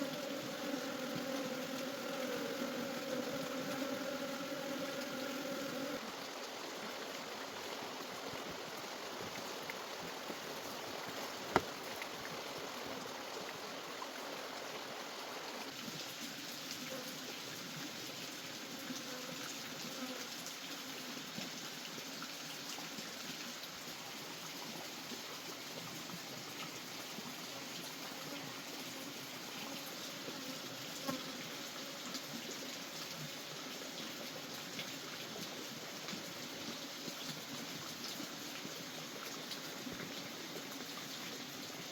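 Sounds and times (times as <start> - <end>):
running water trickling: 0.0 - 41.9.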